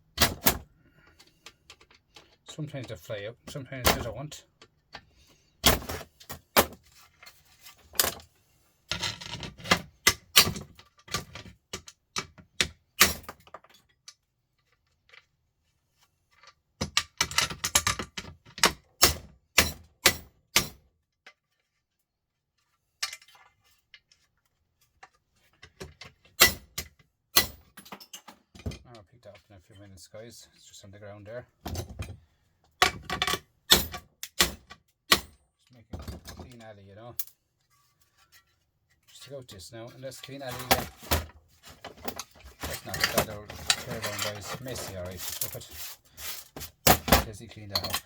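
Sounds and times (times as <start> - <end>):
metal parts and tools clattering: 5.6 - 8.3, 8.9 - 12.4, 25.0 - 28.8, 31.6 - 32.2, 32.8 - 34.6, 36.0 - 48.0.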